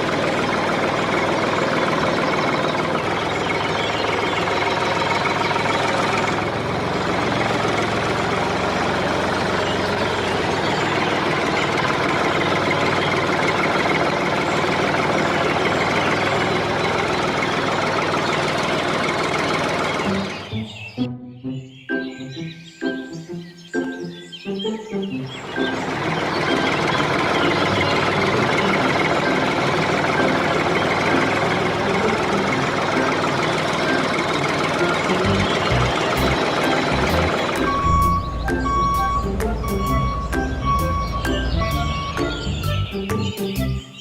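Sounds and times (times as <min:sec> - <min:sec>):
engine running: 0:00.0 - 0:44.0.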